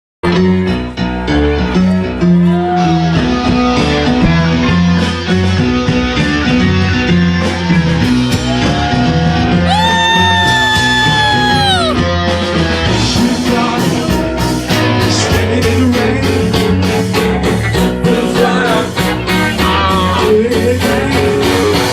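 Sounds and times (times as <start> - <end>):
rhythmic bass line: 0.2 - 21.9
rock music with guitar: 0.2 - 21.9.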